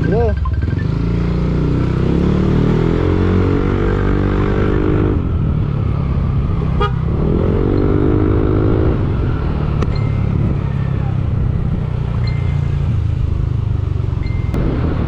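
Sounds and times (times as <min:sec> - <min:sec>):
motorcycle engine accelerating: 0:00.0 - 0:15.0
wind rumble on microphone: 0:05.0 - 0:12.1, 0:12.8 - 0:15.0.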